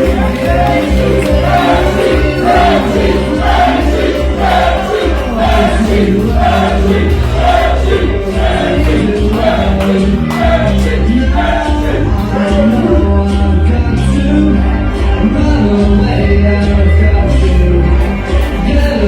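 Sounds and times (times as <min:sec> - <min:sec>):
choir-like singing: 0:00.0 - 0:13.0
steady bass beat: 0:00.0 - 0:19.0.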